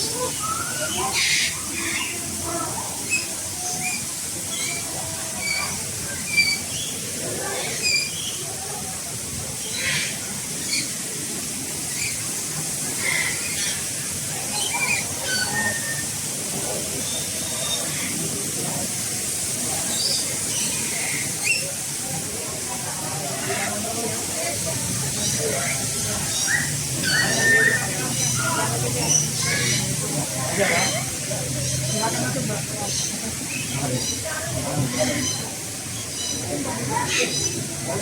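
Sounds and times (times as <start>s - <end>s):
birds chirping: 23.2s - 38.0s.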